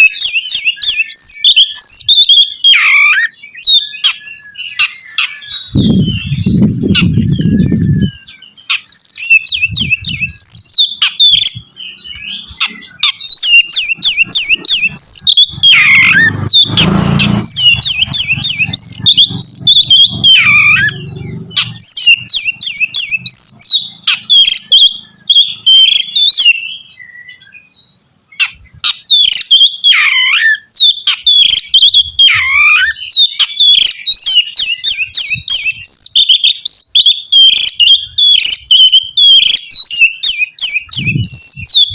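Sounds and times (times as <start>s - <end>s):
bird singing trills and whistles: 0.0s - 41.9s.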